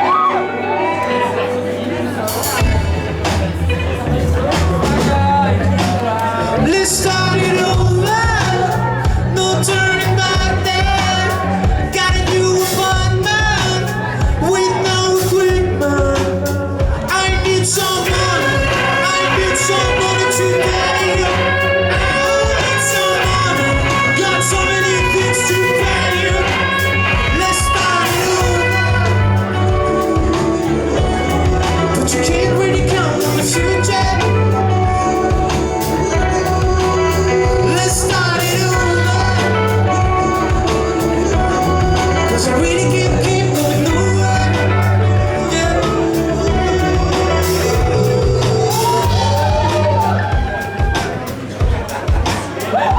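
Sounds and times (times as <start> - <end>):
person singing: 0.0 - 52.9
rock band playing: 0.0 - 52.9.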